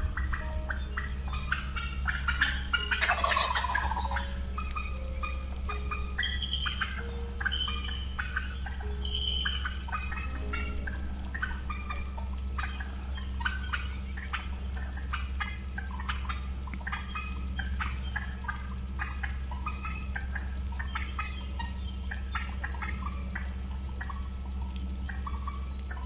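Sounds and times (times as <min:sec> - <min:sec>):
birds chirping and squawking: 0:00.0 - 0:26.0
low hum: 0:00.0 - 0:26.0.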